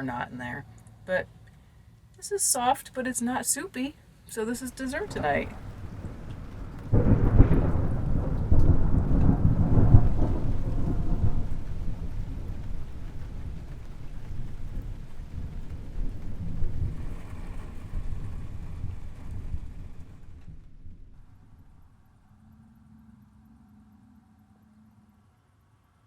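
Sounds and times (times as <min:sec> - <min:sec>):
thunder rumbling: 0:04.3 - 0:24.2.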